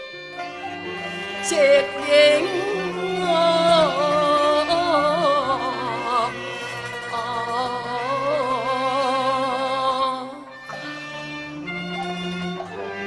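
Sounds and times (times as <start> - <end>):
instrumental accompaniment: 0.0 - 13.0
opera singing with vibrato: 0.7 - 10.6.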